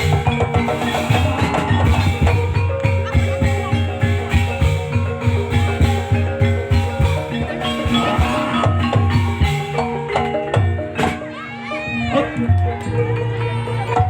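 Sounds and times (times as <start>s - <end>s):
steady drum beat: 0.0s - 10.9s
gamelan keyed instruments ringing: 0.0s - 14.0s.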